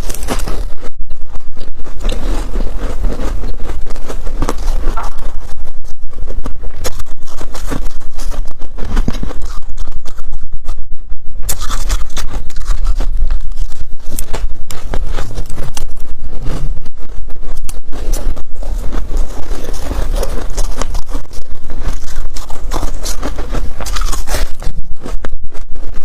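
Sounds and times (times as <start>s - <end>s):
freezer frost crunching: 0.0s - 10.7s, 11.4s - 26.0s.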